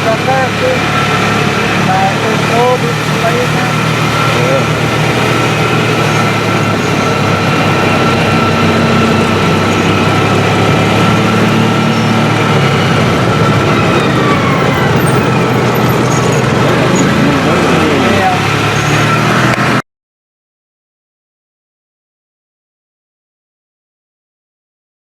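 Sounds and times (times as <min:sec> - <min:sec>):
engine humming with whine: 0:00.0 - 0:19.8.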